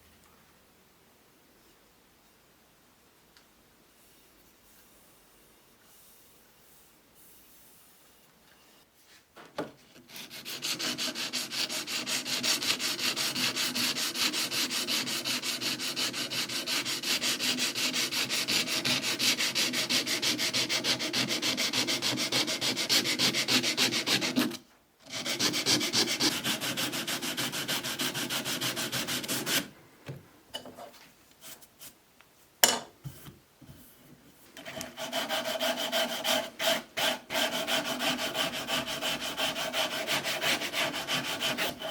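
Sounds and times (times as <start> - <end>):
hand sanding strokes: 10.0 - 29.7, 34.6 - 41.9.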